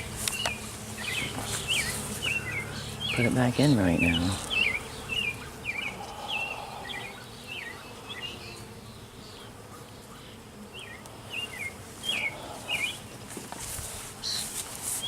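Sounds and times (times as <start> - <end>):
honeybees buzzing: 0.0 - 15.0.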